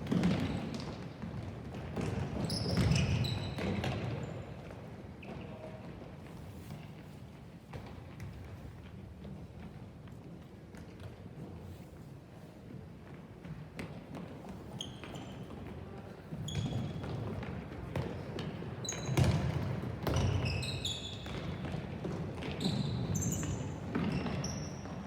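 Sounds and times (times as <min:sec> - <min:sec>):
shoes squeaking on floor: 0:02.1 - 0:04.5, 0:14.4 - 0:25.0
ball bouncing on hard court: 0:16.3 - 0:24.9.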